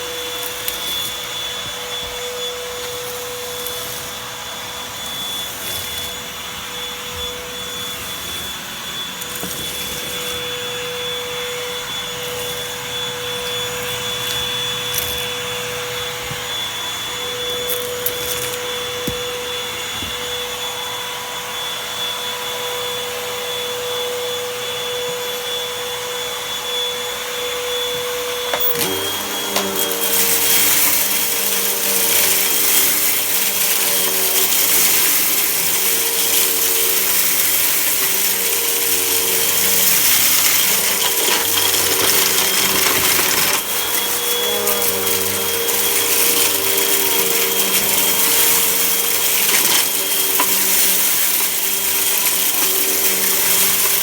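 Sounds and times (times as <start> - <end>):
dirt rattling through hose: 0.0 - 16.8, 28.2 - 54.0
vacuum cleaner motor whine: 0.0 - 54.0.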